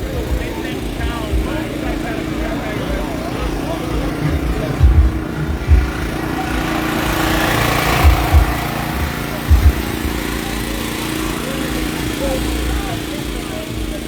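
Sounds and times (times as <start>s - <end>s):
short low thumps: 0.0s - 11.4s
engine humming: 0.0s - 14.0s.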